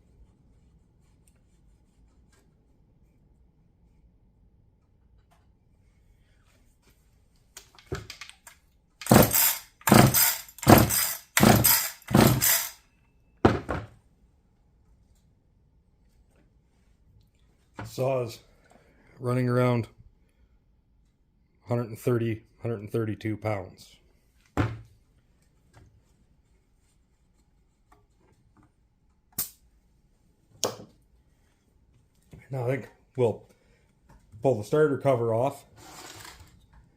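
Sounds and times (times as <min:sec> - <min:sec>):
chainsaw pull-starter rope yanked: 0:09.0 - 0:12.8.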